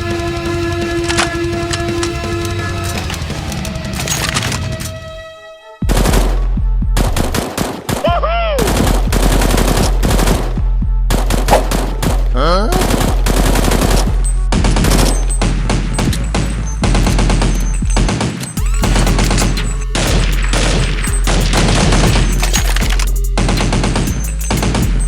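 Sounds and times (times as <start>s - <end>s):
music: 0.0s - 25.0s
automatic gunfire: 12.8s - 25.0s.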